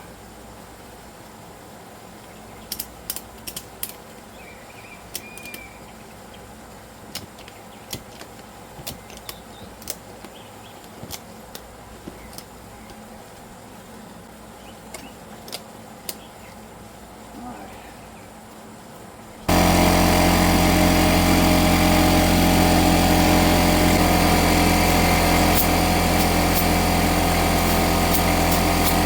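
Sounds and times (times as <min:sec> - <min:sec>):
steady low hum: 0:19.5 - 0:29.0.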